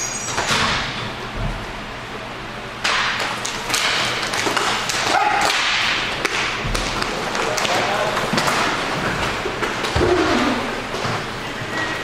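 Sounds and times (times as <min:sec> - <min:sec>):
hockey sticks and puck clacking: 0:02.8 - 0:11.3.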